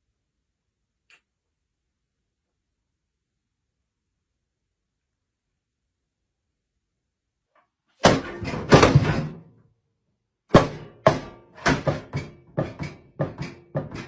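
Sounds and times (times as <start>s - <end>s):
hollow knocks: 8.0s - 9.4s, 10.5s - 14.0s
heavy thunk: 8.0s - 9.5s, 10.5s - 14.0s
clatter of hits: 8.0s - 9.6s, 10.5s - 14.0s.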